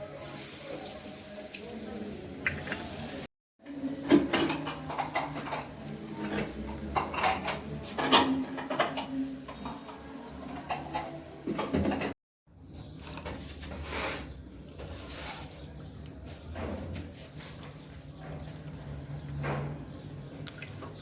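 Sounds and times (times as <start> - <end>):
dishes and utensils clinking: 4.0 - 12.2.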